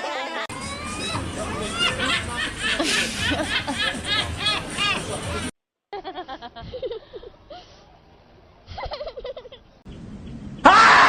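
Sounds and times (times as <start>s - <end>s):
pitched giggling: 0.5s - 7.5s, 8.7s - 9.8s.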